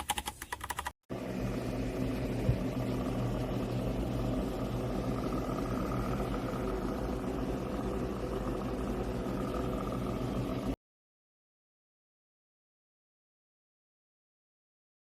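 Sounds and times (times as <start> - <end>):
mechanical hum with faint whine: 1.1 - 10.8.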